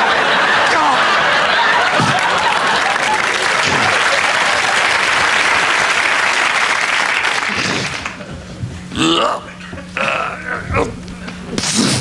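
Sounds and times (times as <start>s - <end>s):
audience applauding: 0.0s - 8.2s.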